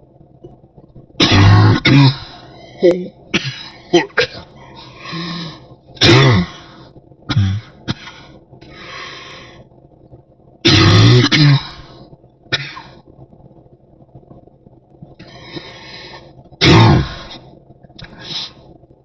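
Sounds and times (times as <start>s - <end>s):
person coughing deeply: 1.2s - 2.2s, 3.3s - 4.5s, 6.0s - 6.6s, 7.3s - 8.2s, 16.6s - 17.2s.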